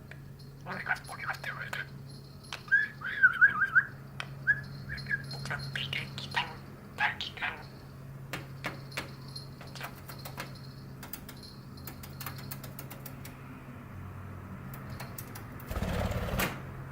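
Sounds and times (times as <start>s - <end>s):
steady low hum: 0.0s - 16.9s
budgerigar clicking: 4.9s - 7.6s.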